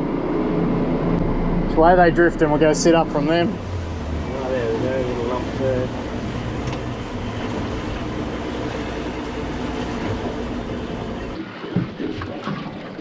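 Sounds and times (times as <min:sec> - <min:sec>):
rushing wind: 0:00.0 - 0:11.4
outboard motor rumble: 0:00.0 - 0:13.0
water noise: 0:00.0 - 0:13.0.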